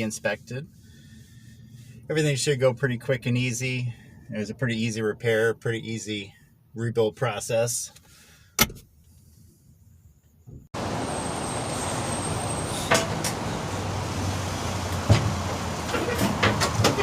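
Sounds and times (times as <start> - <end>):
traffic noise: 10.8 - 17.0.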